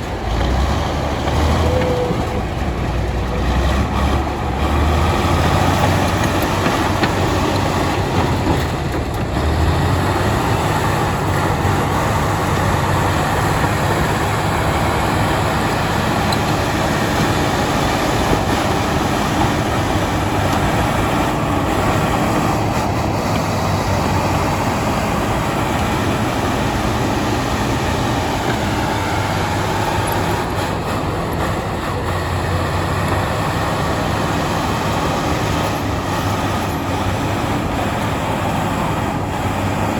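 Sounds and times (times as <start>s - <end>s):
diesel engine running under load: 0.0s - 39.9s
steel tracks clattering on stone: 5.4s - 9.8s.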